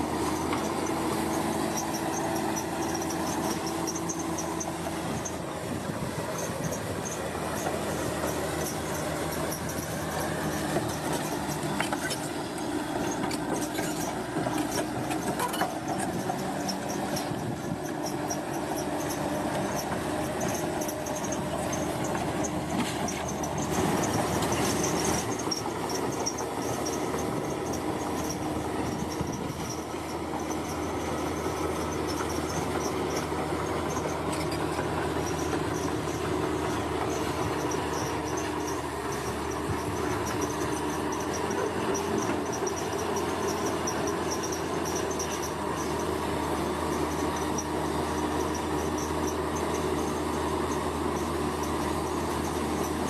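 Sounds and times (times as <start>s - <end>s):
bulldozer diesel engine running: 0.0s - 53.0s
insects trilling: 23.2s - 53.0s.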